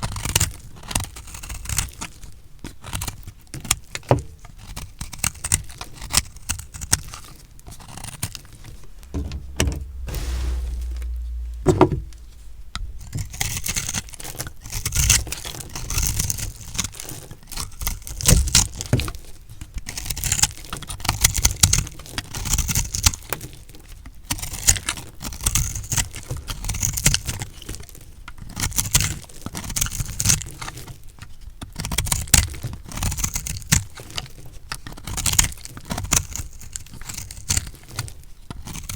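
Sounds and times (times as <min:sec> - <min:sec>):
brief low rumble: 0:09.0 - 0:13.0.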